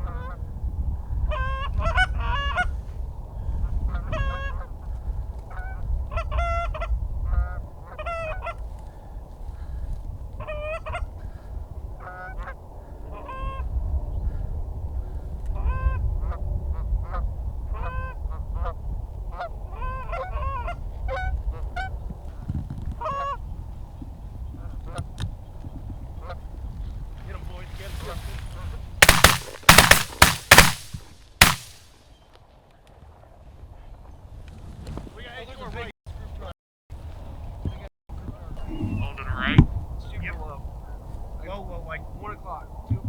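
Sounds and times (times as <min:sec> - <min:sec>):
low rumble of wind: 0:00.0 - 0:31.8, 0:32.4 - 0:43.0
geese honking and clucking: 0:05.5 - 0:08.6.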